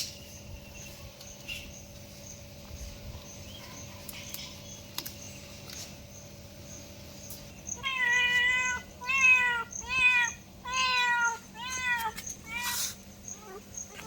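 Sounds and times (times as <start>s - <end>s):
cat meowing: 7.8s - 14.0s.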